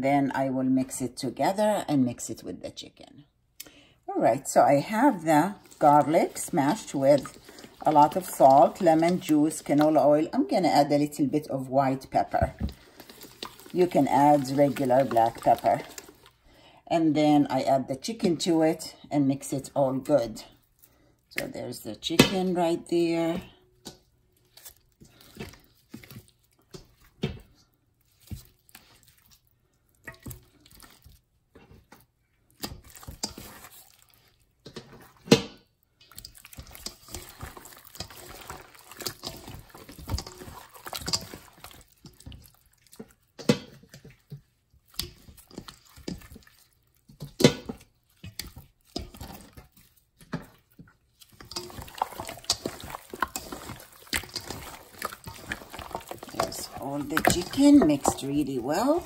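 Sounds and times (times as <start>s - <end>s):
wet squelching and sloshing: 3.6s - 17.3s, 19.6s - 59.0s.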